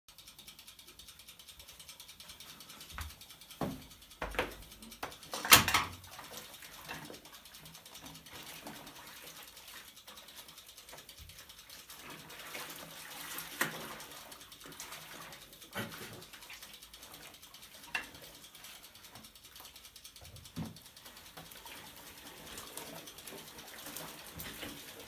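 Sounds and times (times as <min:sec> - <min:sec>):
washing machine clicks and knocks: 0:03.0 - 0:06.2
water sloshing in tub: 0:03.7 - 0:18.8, 0:21.3 - 0:25.0.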